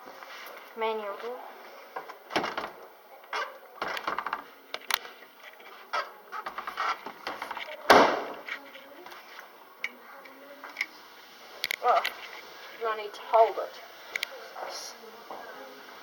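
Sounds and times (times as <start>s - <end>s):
lift door clicks and knocks: 2.3s - 2.8s
loud door clunk: 2.3s - 2.8s, 7.1s - 8.4s.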